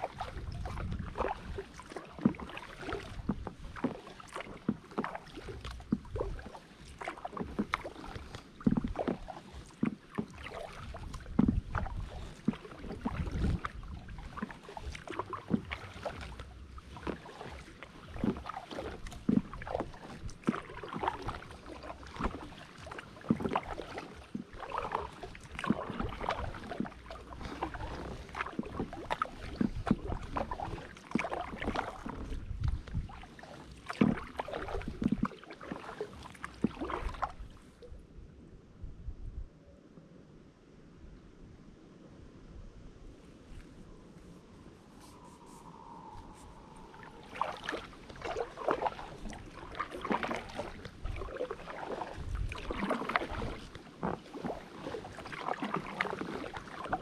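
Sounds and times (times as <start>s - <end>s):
paddle splashing in water: 0.0s - 38.0s, 43.4s - 57.0s.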